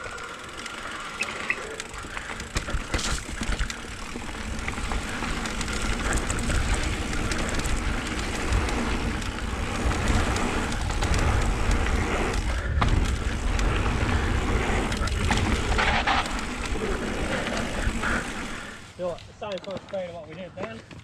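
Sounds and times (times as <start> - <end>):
bike rattling: 0.0 - 21.0
bike tyres rolling over dirt: 0.0 - 21.0
wind buffeting microphone: 2.4 - 18.9.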